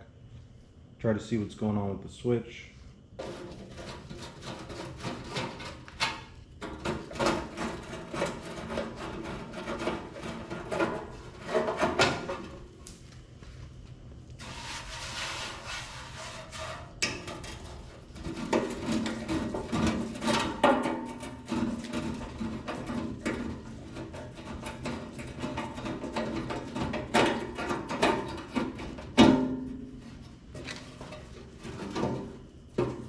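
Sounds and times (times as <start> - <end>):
tools clicking and knocking on sheet metal: 3.2 - 12.6, 17.0 - 29.8.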